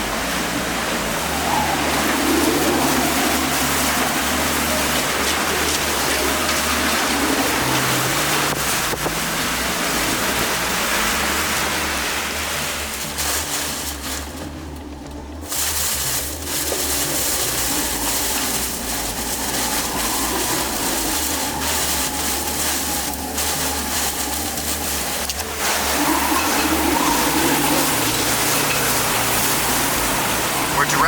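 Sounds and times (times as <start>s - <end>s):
driving rain: 0.0s - 31.0s
hurricane wind: 0.0s - 31.0s.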